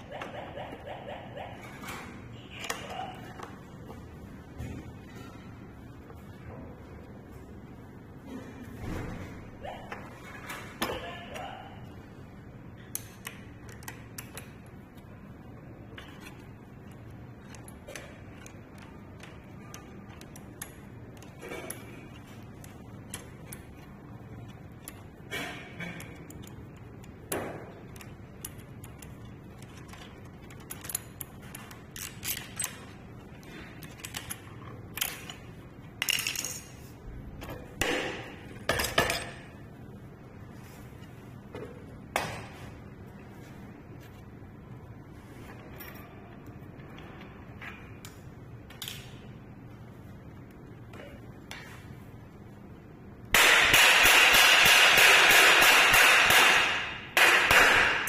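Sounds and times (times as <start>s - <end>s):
metal parts clinking: 16.0s - 37.7s.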